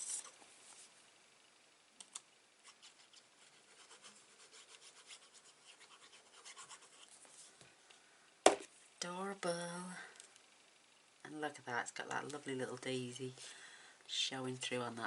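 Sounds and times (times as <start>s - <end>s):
paper rubbing and scratching: 2.6s - 7.5s.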